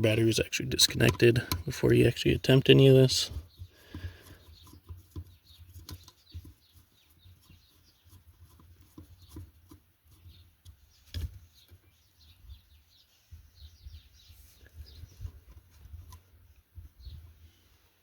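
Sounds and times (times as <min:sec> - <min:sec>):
birds chirping: 0:00.0 - 0:18.0
hands handling wires clicking: 0:00.8 - 0:01.8.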